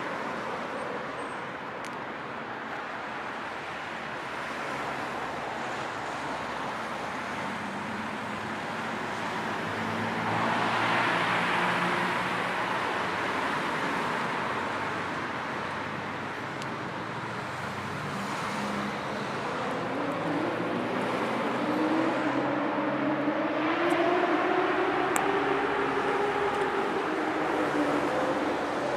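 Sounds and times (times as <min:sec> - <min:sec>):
road traffic passing: 0:00.0 - 0:28.9
rising engine note: 0:19.5 - 0:28.9.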